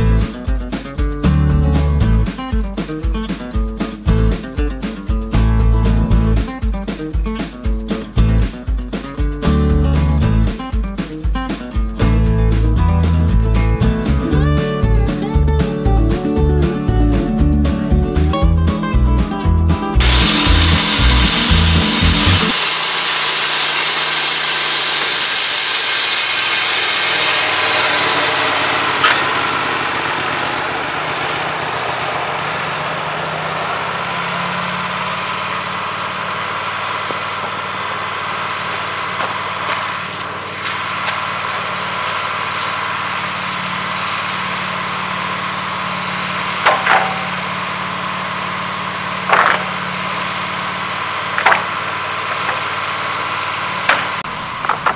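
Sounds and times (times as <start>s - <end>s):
sawmill engine humming: 0.0s - 54.9s
band saw blade cutting log: 20.0s - 54.9s
sharp clicks or knocks: 46.6s - 47.3s, 51.4s - 51.7s, 53.9s - 54.9s.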